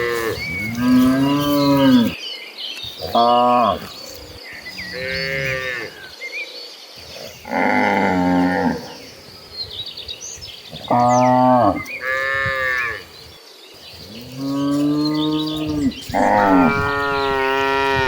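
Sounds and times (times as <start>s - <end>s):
cows mooing: 0.0s - 2.2s, 3.0s - 6.1s, 7.2s - 9.1s, 10.7s - 13.3s, 14.0s - 18.0s.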